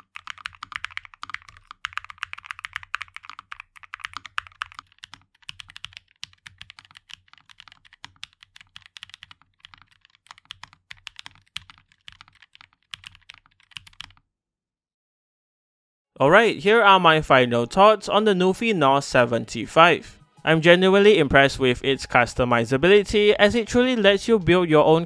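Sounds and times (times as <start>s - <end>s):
mechanical keyboard keystrokes: 0.0s - 14.2s.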